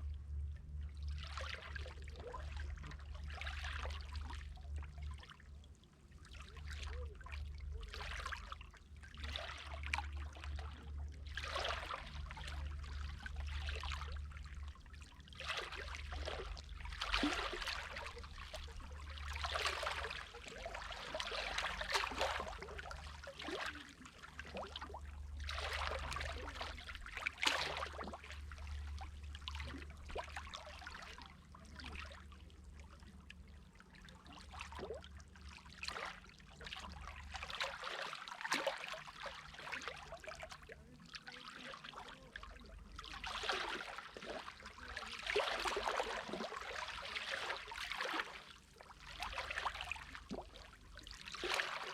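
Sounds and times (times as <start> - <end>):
low rumble: 0.0 - 34.3
sea water lapping and splashing: 0.0 - 51.9.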